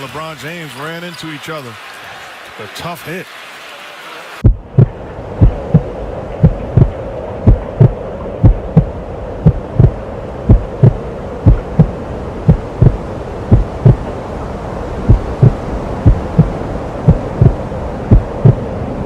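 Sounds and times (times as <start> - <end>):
heartbeat thumps: 4.4 - 14.1, 15.0 - 18.7
steady hum: 4.4 - 19.0.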